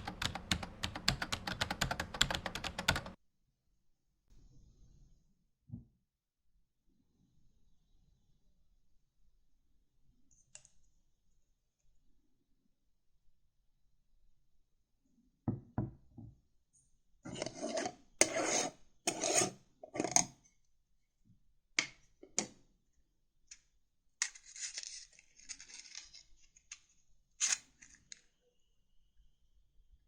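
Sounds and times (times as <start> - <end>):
cards rustling and scraping: 24.2 - 28.2.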